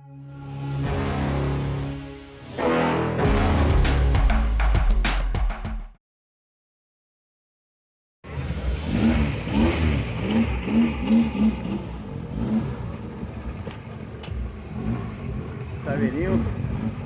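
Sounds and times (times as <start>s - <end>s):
car engine revving: 8.2s - 17.0s
steady engine rumble: 8.3s - 17.0s.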